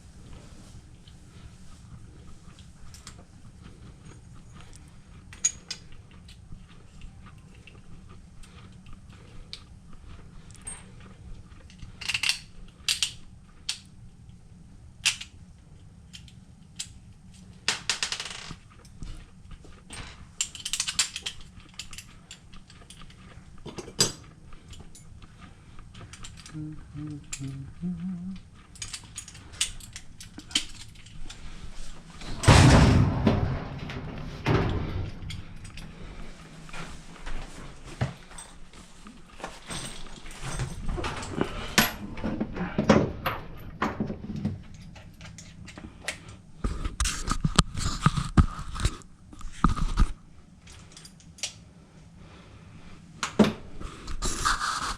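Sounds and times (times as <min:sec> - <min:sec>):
tools and metal parts clicking: 0:05.3 - 0:06.4, 0:11.7 - 0:13.9, 0:19.9 - 0:25.0, 0:26.1 - 0:26.6, 0:28.7 - 0:31.4
scraping or rustling noise: 0:30.8 - 0:42.6, 0:53.7 - 0:54.9.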